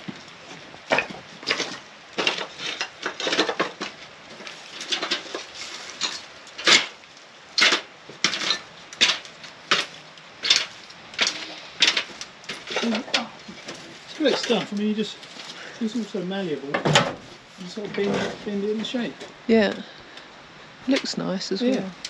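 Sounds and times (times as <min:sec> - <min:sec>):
metal gutter clanking: 0:07.6 - 0:14.9, 0:16.6 - 0:19.3.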